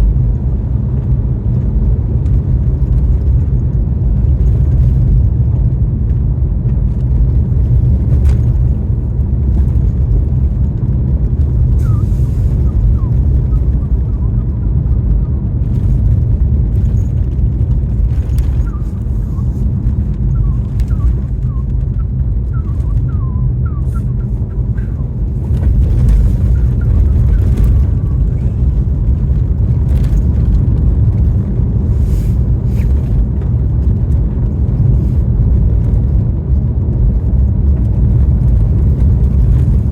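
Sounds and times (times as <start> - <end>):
road and wind rumble: 0.0 - 39.9
short squeaks: 11.6 - 14.6, 18.2 - 28.9.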